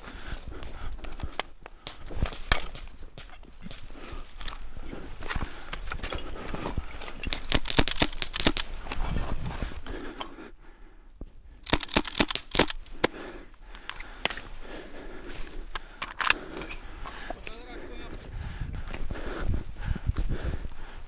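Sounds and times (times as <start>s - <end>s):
airsoft gunfire cracks: 11.7s - 12.8s.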